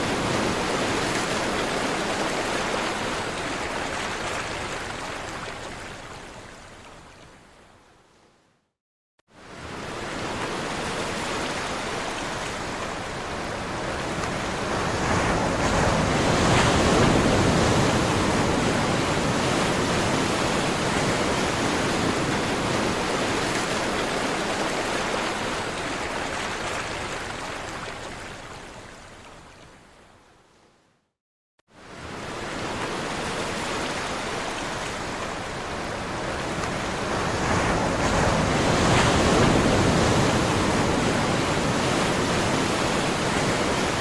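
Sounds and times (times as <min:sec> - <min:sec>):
sea waves washing in: 0:09.4 - 0:28.5, 0:31.7 - 0:44.0.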